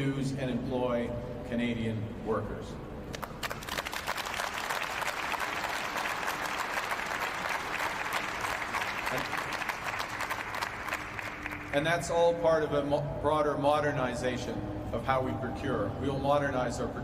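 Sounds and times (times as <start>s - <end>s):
crowd applauding: 3.1s - 11.8s.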